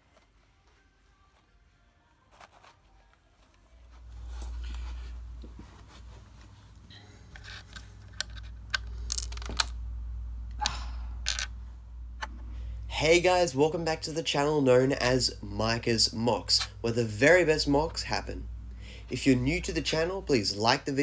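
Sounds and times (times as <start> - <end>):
low steady hum: 3.4 - 21.0
plastic bricks clicking and rattling: 7.4 - 9.8, 11.2 - 11.5.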